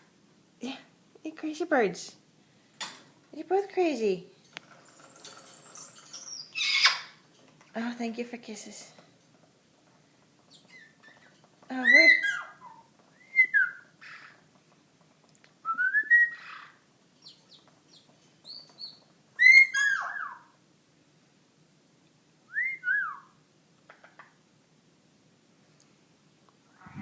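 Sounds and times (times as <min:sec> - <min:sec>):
parrot whistling: 0:11.8 - 0:13.9, 0:15.7 - 0:16.7, 0:19.4 - 0:20.5.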